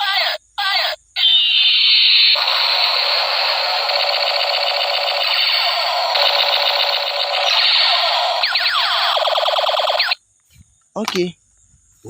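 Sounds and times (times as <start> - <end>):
electronic toy gun firing: 1.2 - 10.2.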